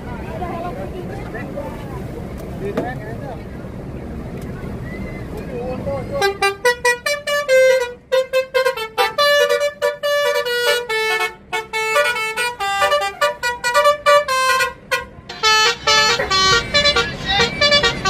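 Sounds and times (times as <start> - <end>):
musical air horn playing a tune: 6.2 - 18.0.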